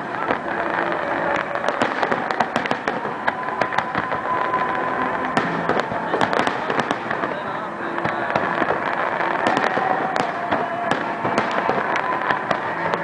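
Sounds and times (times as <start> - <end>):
fireworks cracking and popping: 0.0 - 13.0.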